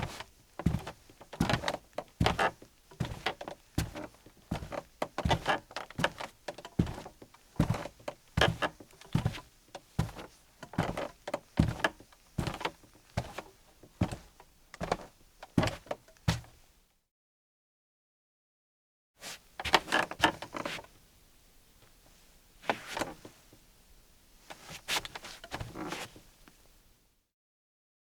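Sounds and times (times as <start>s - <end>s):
footsteps on creaky floor: 0.0s - 16.5s, 24.7s - 26.2s.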